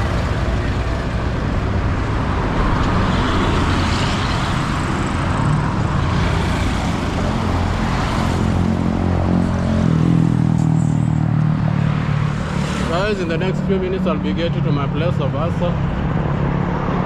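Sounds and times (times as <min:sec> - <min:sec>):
road traffic hum: 0:00.0 - 0:17.0.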